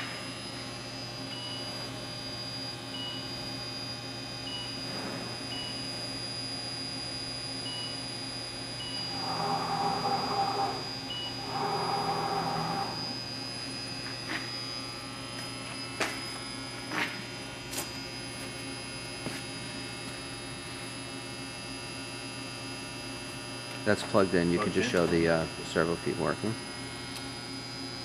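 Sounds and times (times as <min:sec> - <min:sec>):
machine electrical hum: 0:00.0 - 0:28.0
mechanical whirring: 0:08.8 - 0:13.2.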